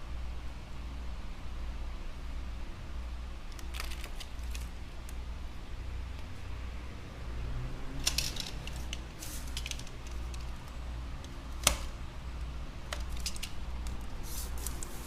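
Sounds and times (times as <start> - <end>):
steady low hum: 0.0 - 15.0
adhesive tape crackling: 3.5 - 5.2, 8.0 - 12.0, 12.8 - 15.0.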